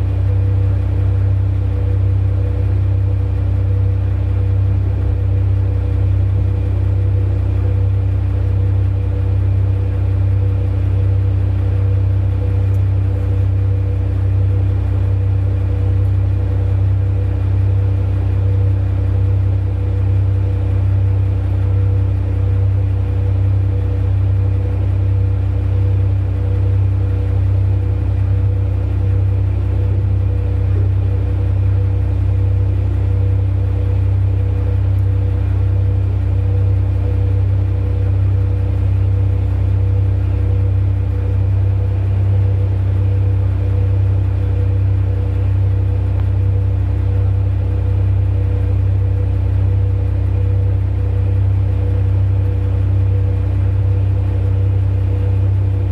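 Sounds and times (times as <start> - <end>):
heavy diesel engine droning: 0.0 - 55.9.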